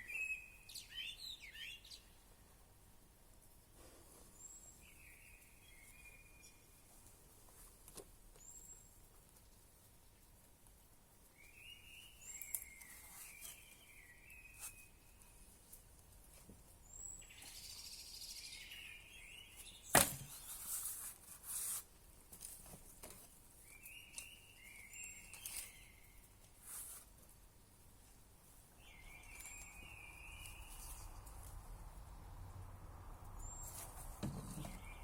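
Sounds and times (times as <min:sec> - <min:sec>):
rustling: 0:06.8 - 0:17.8, 0:19.6 - 0:32.1, 0:33.4 - 0:35.0.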